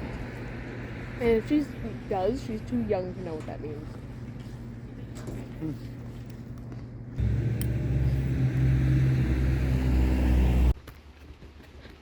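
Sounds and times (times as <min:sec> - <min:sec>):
vehicle engine running: 0:07.2 - 0:10.8.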